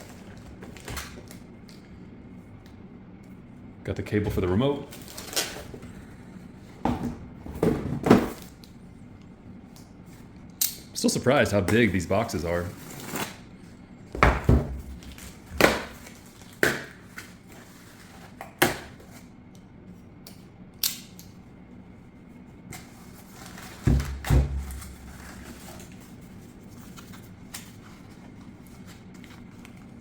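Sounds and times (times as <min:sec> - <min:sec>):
low background hum: 0:00.0 - 0:30.0
cardboard and plastic packaging knocks: 0:14.2 - 0:17.0, 0:23.8 - 0:25.0.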